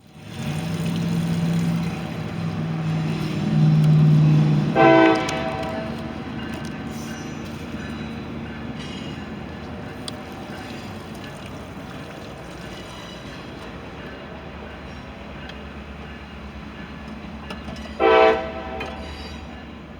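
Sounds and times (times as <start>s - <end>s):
boat engine running: 0.1s - 12.8s.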